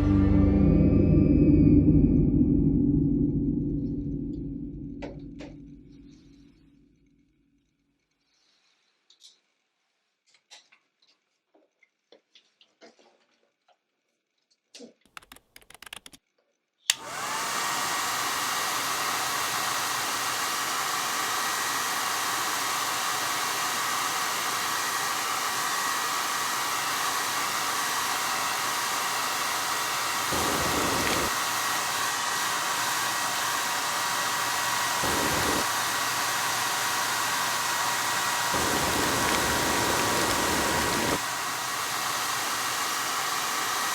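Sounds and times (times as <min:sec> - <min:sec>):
hair dryer switch click: 0:16.9 - 0:17.6, 0:37.1 - 0:41.2
hair dryer blowing air: 0:16.9 - 0:43.9.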